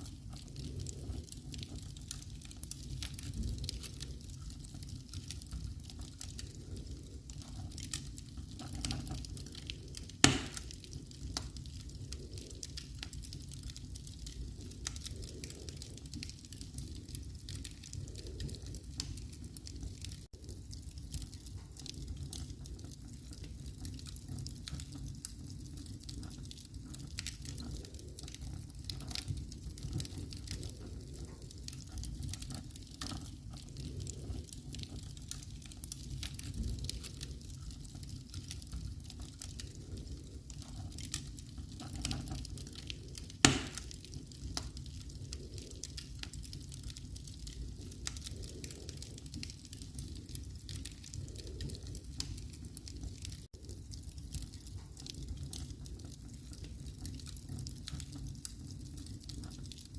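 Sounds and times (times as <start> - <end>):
fire crackling in fireplace: 0.0 - 59.9
sharp loud pop: 10.3 - 10.6, 43.5 - 43.8.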